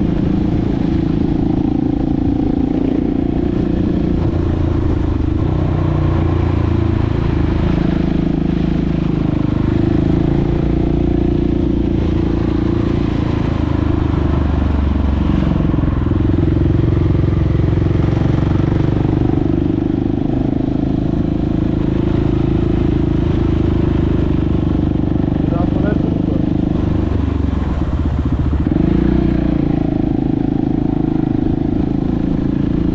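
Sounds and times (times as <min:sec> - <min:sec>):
motorcycle engine running: 0:00.0 - 0:32.9.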